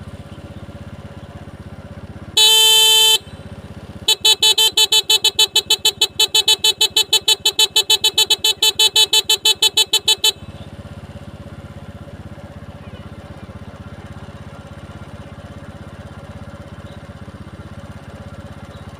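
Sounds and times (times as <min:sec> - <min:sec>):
motorcycle engine idling: 0:00.0 - 0:18.9
motorcycle horn honks: 0:02.4 - 0:11.4.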